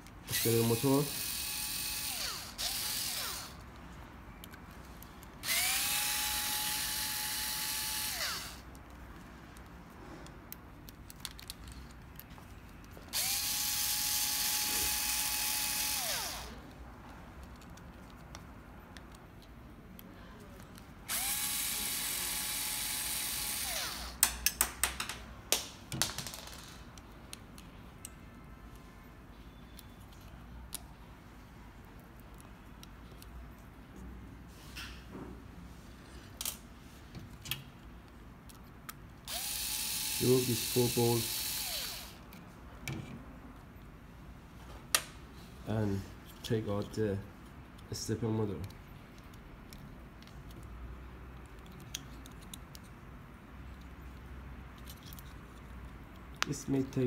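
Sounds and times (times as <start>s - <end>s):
electric screwdriver whine: 0.3s - 3.6s, 5.4s - 8.6s, 13.2s - 16.6s, 21.1s - 24.1s, 39.3s - 42.2s.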